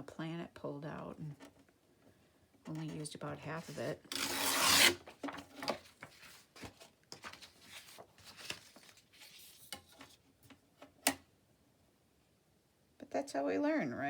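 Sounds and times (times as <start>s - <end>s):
paper rustling: 2.7s - 10.3s.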